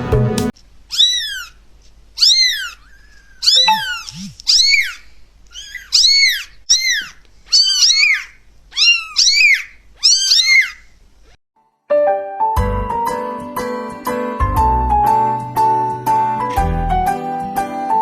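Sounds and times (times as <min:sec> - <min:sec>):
kitten meowing: 0:03.4 - 0:05.0, 0:05.6 - 0:08.2.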